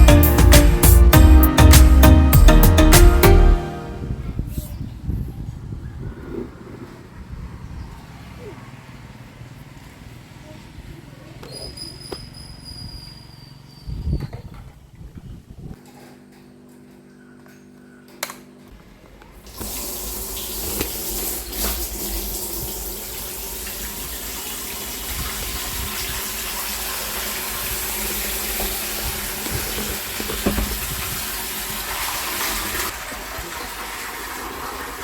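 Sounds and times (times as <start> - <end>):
water rushing through plumbing: 19.5 - 35.0.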